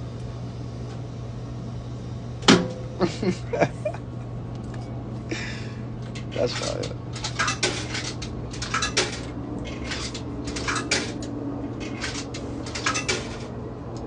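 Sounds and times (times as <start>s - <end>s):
steady low hum: 0.0s - 14.0s
vending machine metallic clinks: 6.1s - 11.2s, 11.8s - 13.5s.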